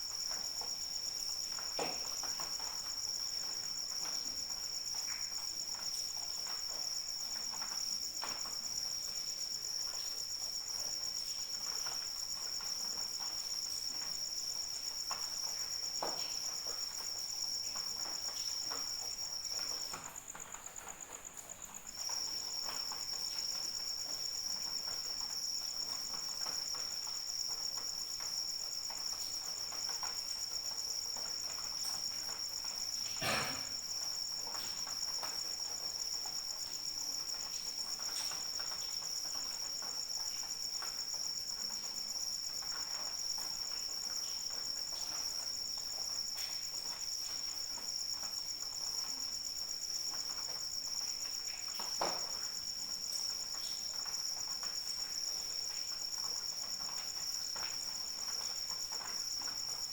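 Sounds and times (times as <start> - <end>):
crickets trilling: 0.0 - 59.9
rain dripping: 0.1 - 33.1.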